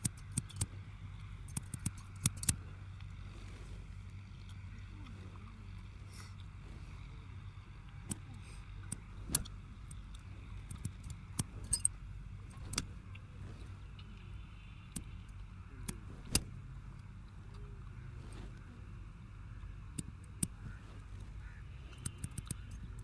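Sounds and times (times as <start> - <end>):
low background hum: 0.0 - 23.0
scissors snipping: 1.5 - 2.6, 21.9 - 22.8.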